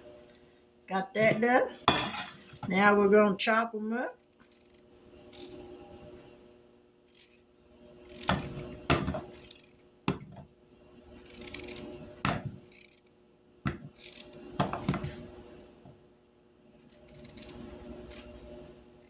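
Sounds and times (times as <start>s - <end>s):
knife scraping: 4.2s - 6.3s, 7.1s - 7.4s, 8.0s - 10.3s, 11.0s - 13.1s, 13.7s - 15.3s, 16.8s - 19.0s
knife chopping potatoes: 8.0s - 10.5s, 11.1s - 13.0s, 13.6s - 15.3s, 16.8s - 18.5s.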